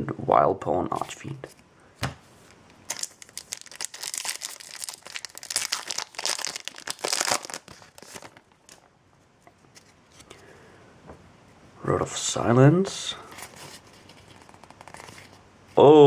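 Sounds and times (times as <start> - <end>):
foil wrapper crinkling and tearing: 2.8 - 8.9.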